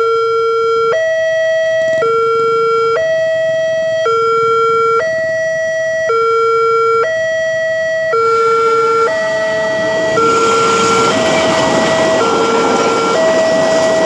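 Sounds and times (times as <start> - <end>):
two-tone crossing alarm: 0.0 - 14.0
oncoming train rushing: 8.2 - 14.0.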